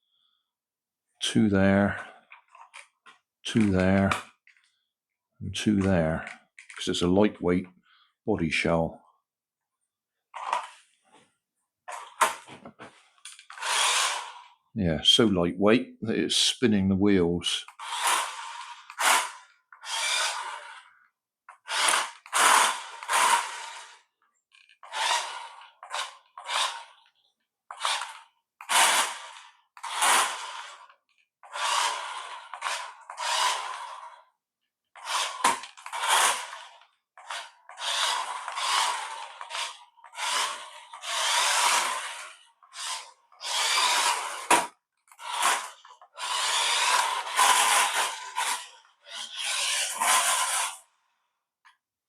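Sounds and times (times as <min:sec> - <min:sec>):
toy car electric motor whirring: 0:10.4 - 0:10.8, 0:13.2 - 0:14.6, 0:17.4 - 0:51.0.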